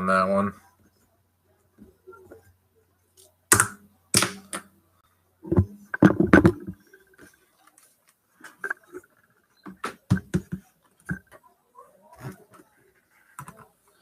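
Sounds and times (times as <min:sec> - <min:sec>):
knocks and clicks on a desk: 0:05.5 - 0:06.8, 0:09.7 - 0:11.3.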